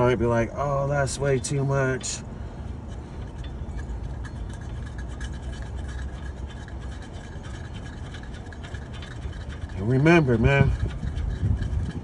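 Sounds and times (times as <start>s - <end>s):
low background rumble: 0.0s - 12.0s
metal bolts scraping and ticking: 0.0s - 12.0s.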